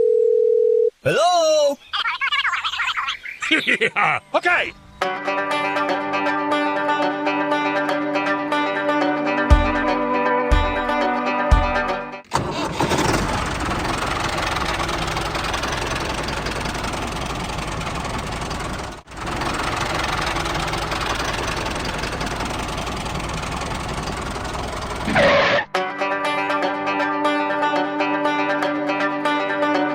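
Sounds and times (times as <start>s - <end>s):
small machine rattling: 12.7s - 25.2s.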